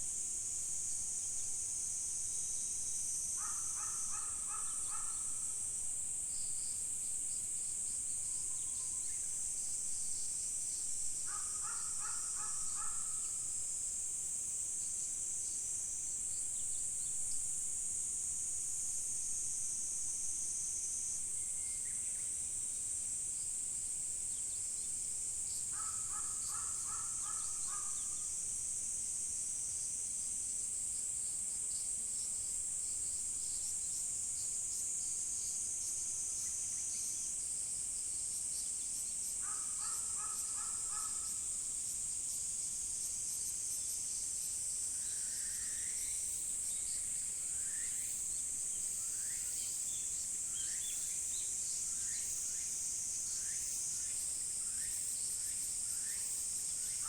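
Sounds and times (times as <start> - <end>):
insects chorus: 0.0 - 57.0
crow cawing: 39.5 - 41.2.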